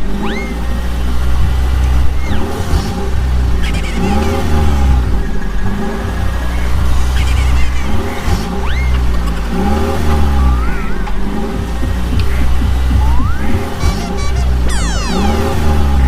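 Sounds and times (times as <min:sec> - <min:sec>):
engine revving up and down: 0:00.0 - 0:16.0
short rising whistle: 0:13.1 - 0:15.6.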